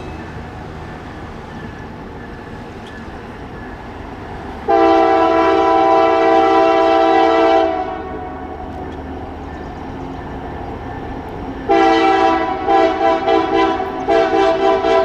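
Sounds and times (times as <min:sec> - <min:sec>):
train rolling past: 0:00.0 - 0:15.0
locomotive air horn: 0:04.6 - 0:08.6, 0:11.7 - 0:15.0.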